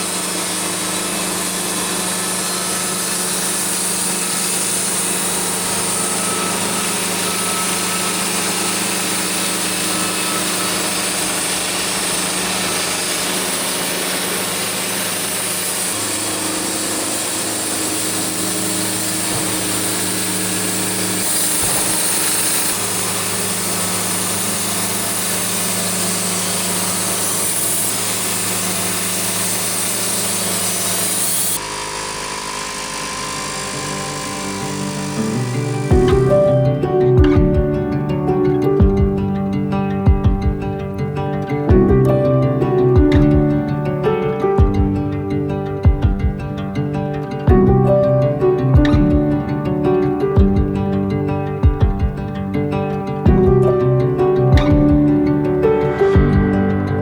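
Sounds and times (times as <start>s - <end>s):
saw cutting wood: 0.0s - 40.0s, 52.3s - 57.0s.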